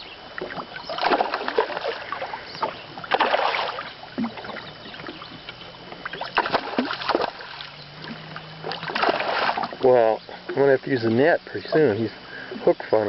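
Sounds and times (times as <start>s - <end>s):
water splashing: 0.3s - 12.9s.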